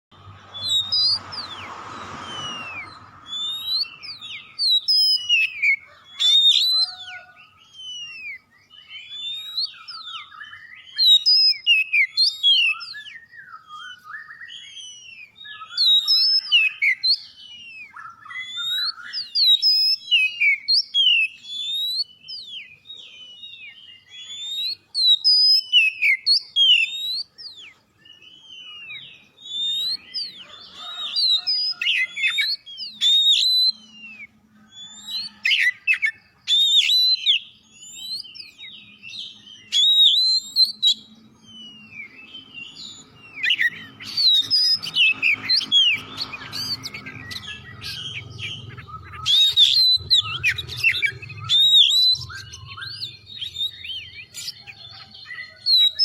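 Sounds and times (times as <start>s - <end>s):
bird singing whistled song: 0.1s - 56.0s
low drone: 41.2s - 54.8s.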